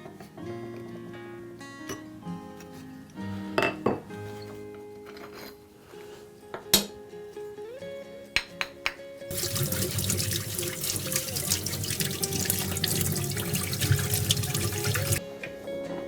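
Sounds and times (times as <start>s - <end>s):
background music: 0.0s - 16.0s
tap water splashing: 9.3s - 15.2s.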